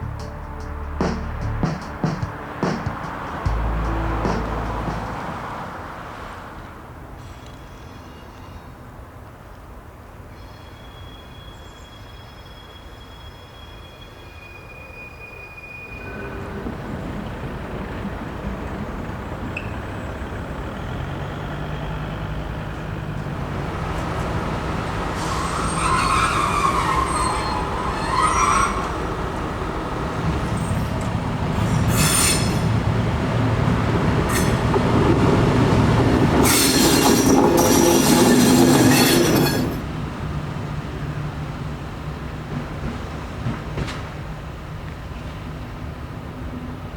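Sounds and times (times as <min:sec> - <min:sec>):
diesel locomotive engine hum: 0:00.0 - 0:08.2, 0:16.0 - 0:46.9
rail noise: 0:00.0 - 0:46.9
steel wheels squealing on rails: 0:07.1 - 0:09.0, 0:10.3 - 0:22.4, 0:23.5 - 0:39.9.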